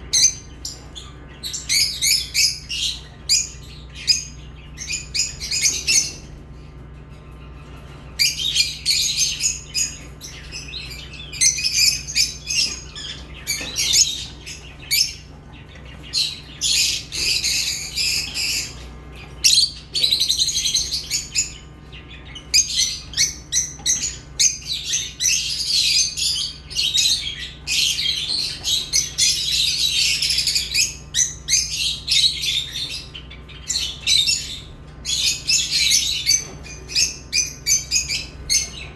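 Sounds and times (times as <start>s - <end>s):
lovebirds chirping: 0.0s - 38.9s.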